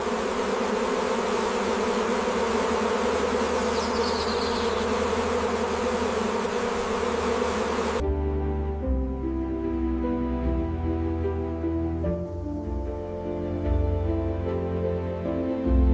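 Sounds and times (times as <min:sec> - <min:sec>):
bee swarm buzzing: 0:00.0 - 0:08.0
soft music: 0:08.0 - 0:15.9.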